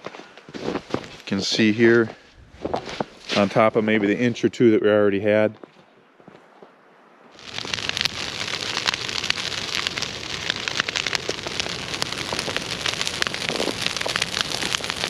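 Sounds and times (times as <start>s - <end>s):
fire crackling and popping: 7.4s - 15.0s
flames rushing: 7.4s - 15.0s.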